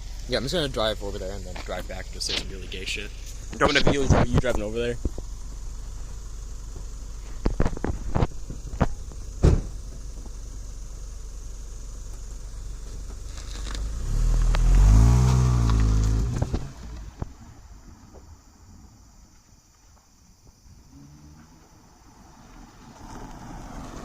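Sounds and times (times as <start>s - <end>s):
car engine running: 0.0s - 17.5s
car driving past: 13.7s - 17.2s, 20.9s - 24.0s.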